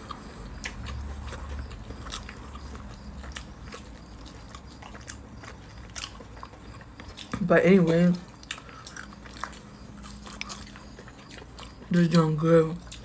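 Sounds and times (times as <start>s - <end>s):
crunchy fish being bitten: 0.0s - 7.4s
open-mouthed chewing: 0.0s - 13.0s.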